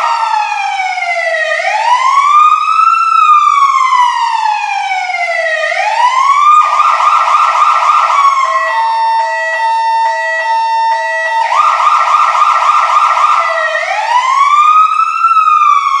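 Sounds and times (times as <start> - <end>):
fire truck siren: 0.0 - 16.0.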